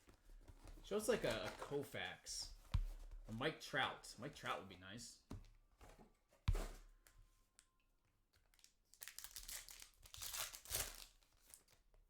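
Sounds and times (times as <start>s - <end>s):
wrapper crinkling and tearing: 8.5s - 11.8s.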